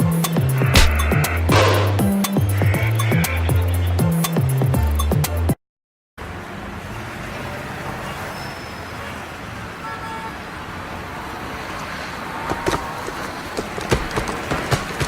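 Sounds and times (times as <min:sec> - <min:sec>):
street traffic rushing: 0:00.0 - 0:05.5, 0:06.2 - 0:15.0
sharp knocks: 0:00.8 - 0:02.3.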